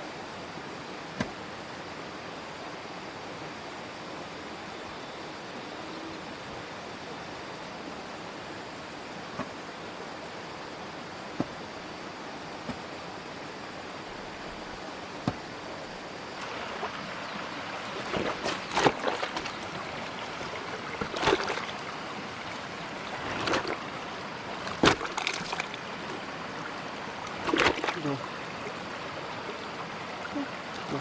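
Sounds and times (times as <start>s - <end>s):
flowing water: 0.0s - 31.0s
short knocks or splashes: 1.2s - 1.4s, 12.6s - 12.9s, 15.2s - 15.5s, 17.9s - 21.8s, 23.0s - 23.8s, 24.6s - 25.8s, 27.2s - 28.3s.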